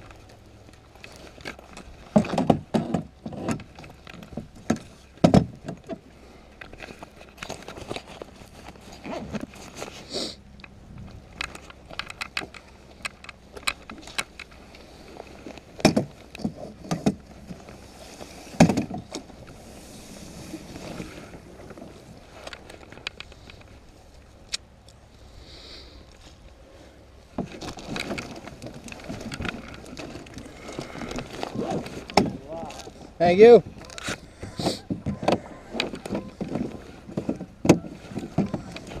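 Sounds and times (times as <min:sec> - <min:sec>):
gear clicks and knocks: 0:00.0 - 0:17.9, 0:20.7 - 0:25.0, 0:27.3 - 0:39.0
water swish: 0:17.4 - 0:22.4.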